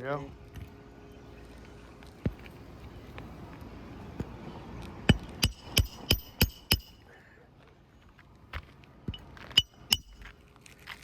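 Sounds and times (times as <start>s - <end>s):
hammer striking metal tool: 5.1s - 7.0s, 9.1s - 10.2s.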